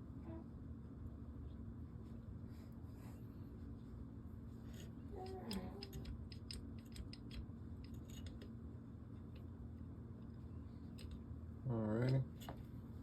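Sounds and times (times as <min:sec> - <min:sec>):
small metal parts clicking: 0:04.7 - 0:08.6, 0:10.9 - 0:11.2.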